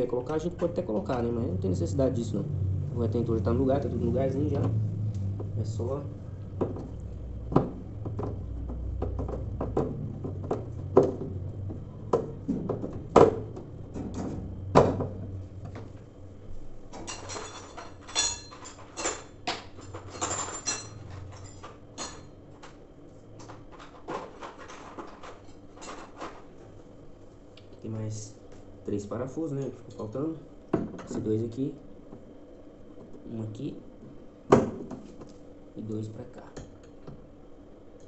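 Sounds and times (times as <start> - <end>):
parts and screws knocking: 7.5 - 15.1.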